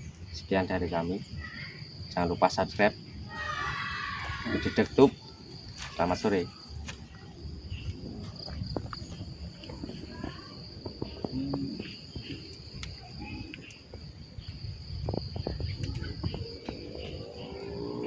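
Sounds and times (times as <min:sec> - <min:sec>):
crickets trilling: 0:00.0 - 0:18.0
wind rumble: 0:06.5 - 0:18.0.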